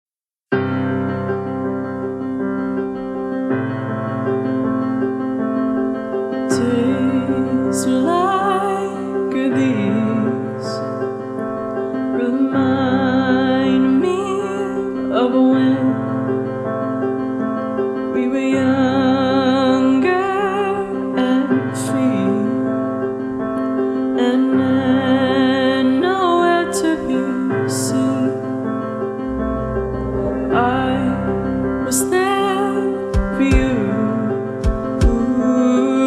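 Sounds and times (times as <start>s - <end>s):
piano chords: 0.5s - 36.0s
woman singing with vibrato: 30.4s - 36.0s.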